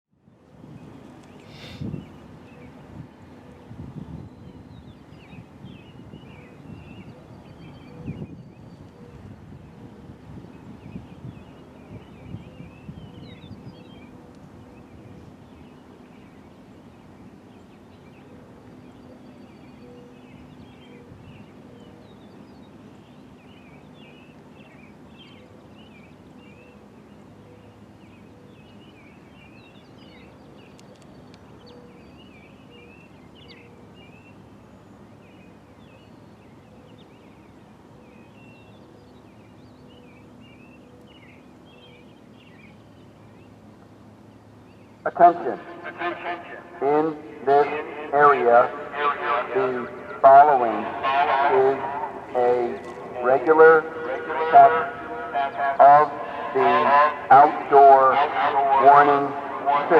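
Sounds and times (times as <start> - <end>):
steady low hum: 0.2 - 59.9
small birds chirping: 0.7 - 59.9
deeper hum: 45.1 - 59.9.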